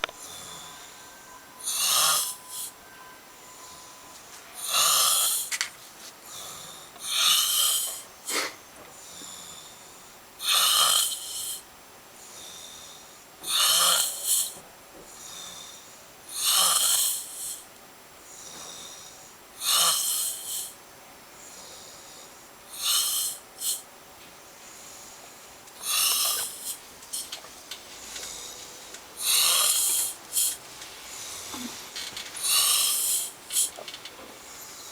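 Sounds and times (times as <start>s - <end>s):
faint breaths: 0.0s - 10.4s, 11.1s - 34.9s
person snoring loudly: 1.6s - 2.7s, 4.6s - 5.5s, 6.3s - 8.5s, 10.4s - 11.6s, 13.5s - 14.6s, 16.3s - 17.6s, 19.6s - 20.7s, 22.8s - 23.8s, 25.8s - 26.8s, 29.2s - 30.6s, 31.5s - 33.8s.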